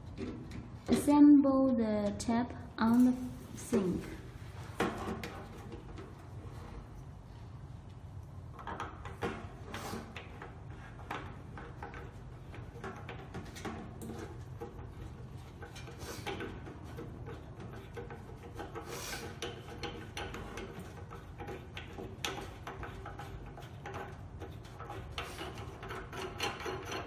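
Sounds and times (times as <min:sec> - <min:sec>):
small fittings clicking and scraping: 0:08.2 - 0:27.0.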